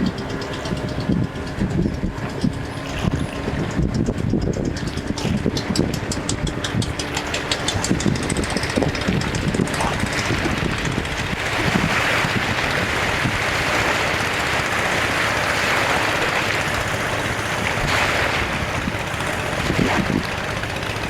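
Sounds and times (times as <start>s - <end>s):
engine idling: 0.0s - 21.0s
waves washing on shore: 0.0s - 21.0s.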